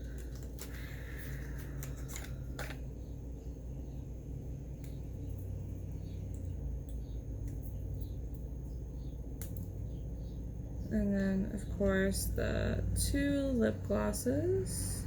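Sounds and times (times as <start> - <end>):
packaging rustling: 0.0 - 2.9
steady low hum: 0.0 - 15.0.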